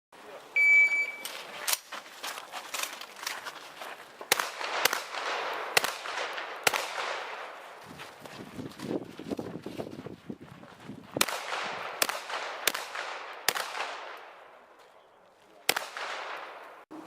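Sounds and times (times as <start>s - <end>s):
shot timer beep: 0.6s - 1.3s
shotgun shots with echo: 4.3s - 7.6s, 11.2s - 14.4s, 15.7s - 16.8s.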